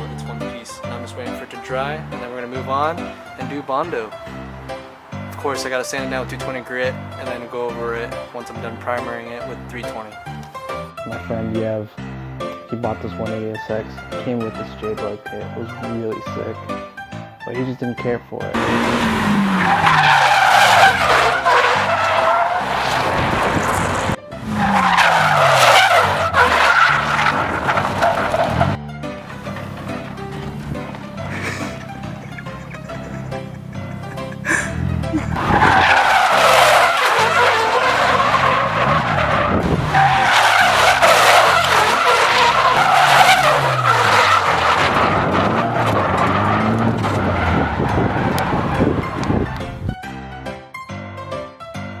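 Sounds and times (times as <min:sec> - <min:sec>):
tyres screeching: 0:18.6 - 0:49.9
car engine running: 0:18.6 - 0:50.0.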